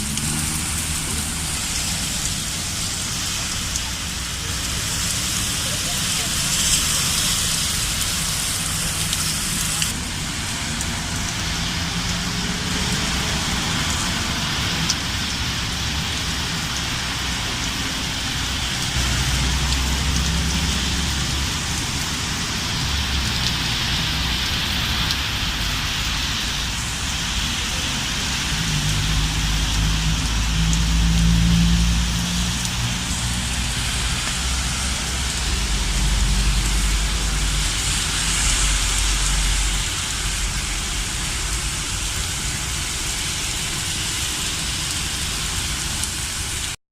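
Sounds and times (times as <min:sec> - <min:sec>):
heavy rain pouring: 0:00.0 - 0:46.8.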